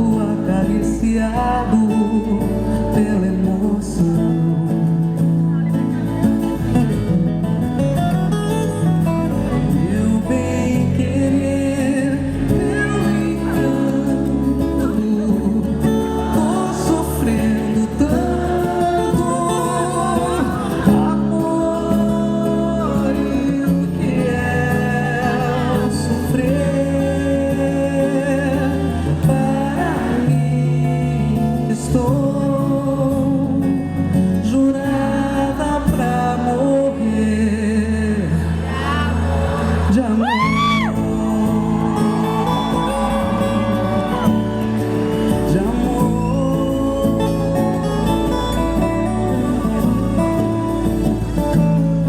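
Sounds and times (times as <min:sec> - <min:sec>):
guitar: 0:00.0 - 0:52.0
person singing with vibrato: 0:08.8 - 0:52.0.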